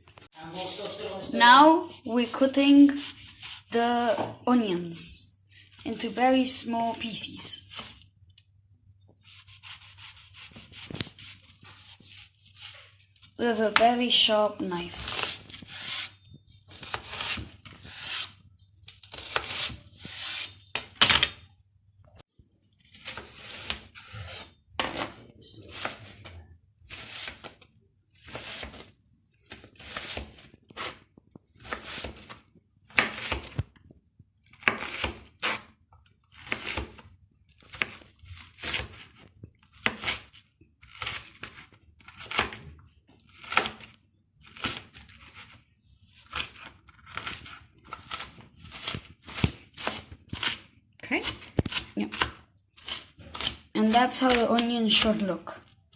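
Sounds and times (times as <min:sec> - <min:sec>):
knife slicing onion on cutting board: 0:09.3 - 0:12.8, 0:14.9 - 0:20.8, 0:22.9 - 0:26.1, 0:26.9 - 0:27.6, 0:29.5 - 0:31.0, 0:31.6 - 0:33.6, 0:34.5 - 0:35.7, 0:36.3 - 0:37.0, 0:37.7 - 0:39.1, 0:39.7 - 0:42.6, 0:43.3 - 0:45.5, 0:46.2 - 0:55.3.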